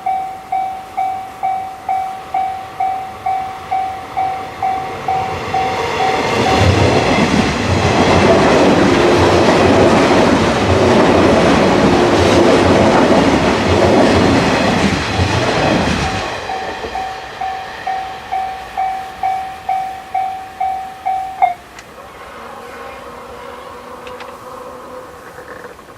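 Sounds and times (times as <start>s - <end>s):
level crossing alarm ringing: 0.0s - 7.4s, 15.6s - 21.9s.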